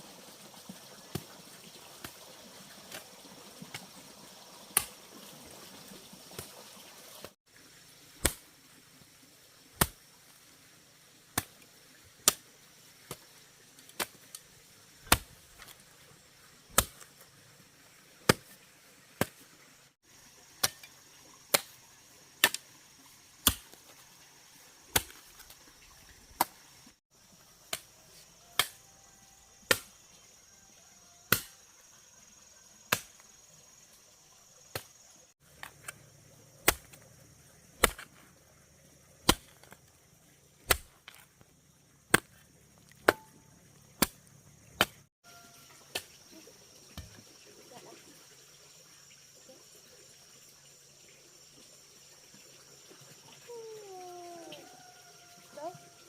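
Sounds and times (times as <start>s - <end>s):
faint insect drone: 0.0s - 56.0s
hand tool chopping strikes: 28.5s - 28.8s, 29.7s - 29.9s, 31.3s - 31.5s, 43.0s - 43.4s.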